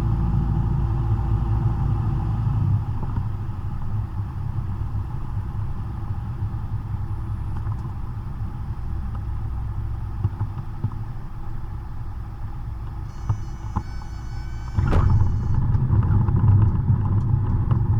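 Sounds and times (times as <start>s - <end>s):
plane engine and propeller drone: 11.4s - 17.9s.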